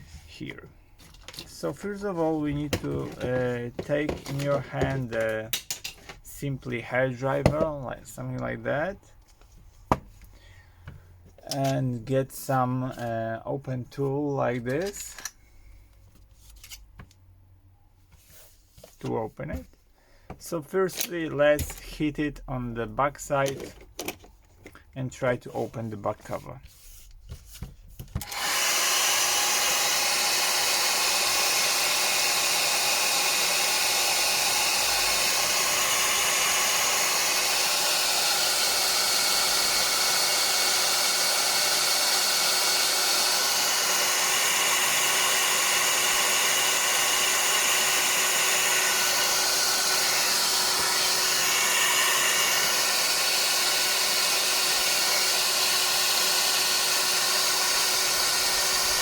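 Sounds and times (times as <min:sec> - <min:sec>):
hair dryer blowing: 0:01.5 - 0:05.2, 0:28.2 - 0:59.0.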